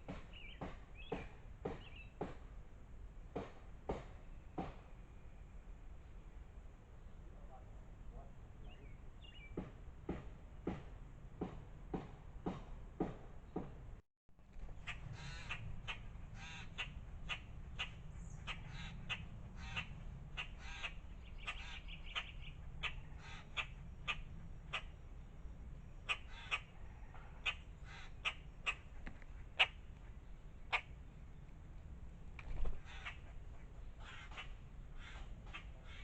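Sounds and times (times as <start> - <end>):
birds chirping and squawking: 14.7 - 25.3, 25.9 - 31.4, 32.6 - 36.0.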